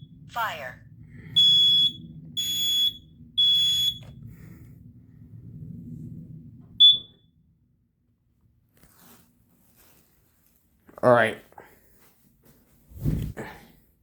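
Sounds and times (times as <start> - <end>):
smoke alarm beeps: 1.3 - 4.2, 6.8 - 7.3.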